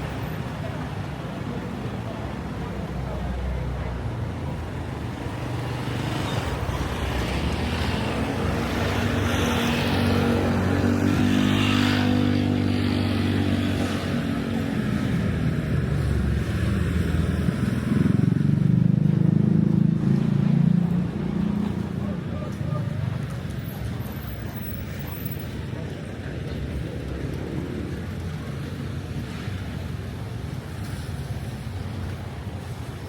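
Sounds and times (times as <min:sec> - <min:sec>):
vehicle engine passing by: 0:07.1 - 0:22.1.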